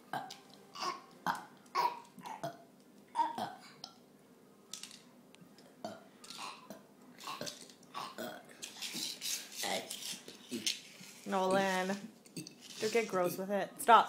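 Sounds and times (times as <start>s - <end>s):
children burping: 0.1s - 3.9s, 5.8s - 8.5s.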